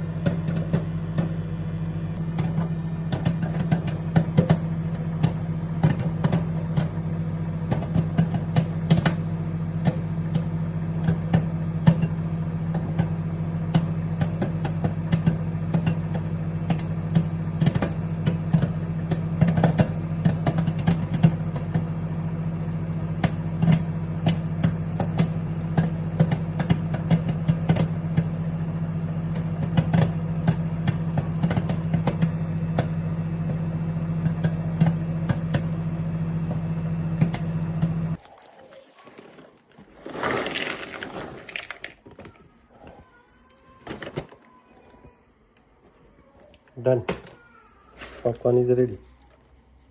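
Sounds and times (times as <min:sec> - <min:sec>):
microwave oven humming: 0:00.0 - 0:38.2
popcorn popping: 0:00.0 - 0:38.3, 0:39.9 - 0:44.6.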